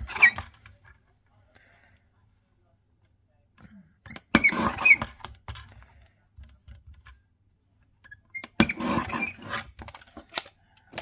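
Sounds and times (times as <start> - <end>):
cardstock being cut: 4.3 - 5.3, 8.6 - 9.8.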